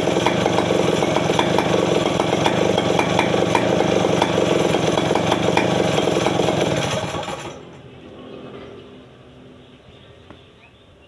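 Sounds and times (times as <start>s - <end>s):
chainsaw idling: 0.0s - 7.7s.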